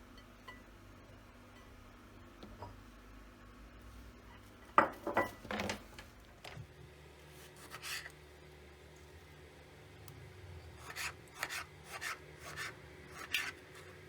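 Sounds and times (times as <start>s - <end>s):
kitchenware knock and clatter: 4.8s - 5.8s.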